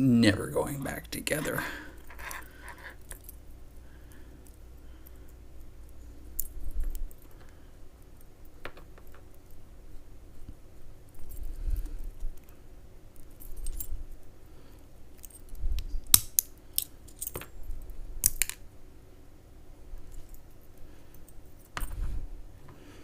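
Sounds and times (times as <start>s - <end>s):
small metal parts clinking: 2.0s - 3.4s, 13.2s - 14.0s, 16.7s - 18.6s.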